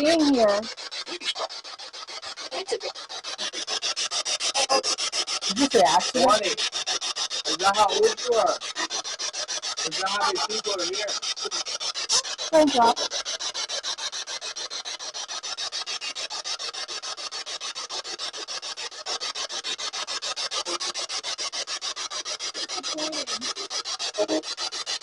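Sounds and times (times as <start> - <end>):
pulsing radio static: 5.5 - 6.6, 9.9 - 11.1, 12.6 - 13.0, 24.2 - 24.4
faint snatches of voice: 22.7 - 24.4.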